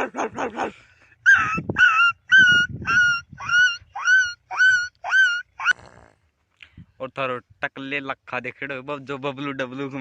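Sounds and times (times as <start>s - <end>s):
boy yelping like a dog: 0.0s - 5.8s.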